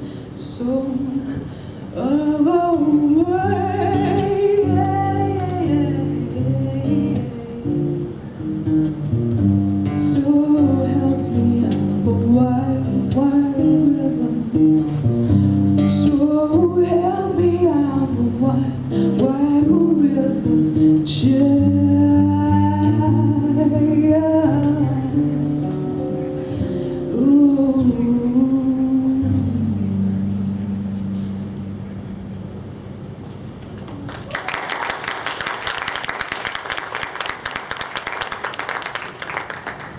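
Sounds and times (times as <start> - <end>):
woman singing folk song: 0.0 - 8.4, 9.8 - 31.2
acoustic guitar: 0.0 - 33.8.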